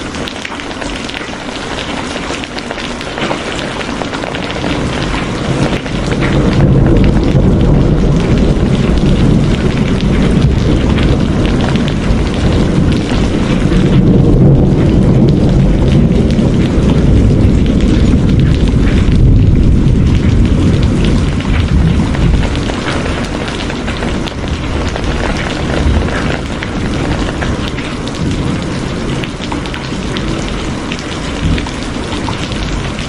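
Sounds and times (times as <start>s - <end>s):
rain hiss: 0.0s - 33.0s
rolling thunder rumble: 2.0s - 33.0s.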